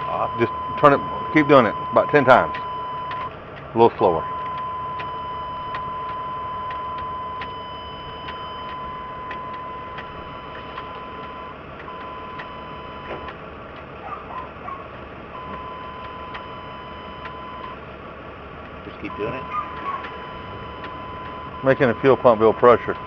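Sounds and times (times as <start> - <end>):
steady high tone: 0.0 - 13.3
dashboard warning chime ticking: 0.0 - 17.9, 18.6 - 23.0.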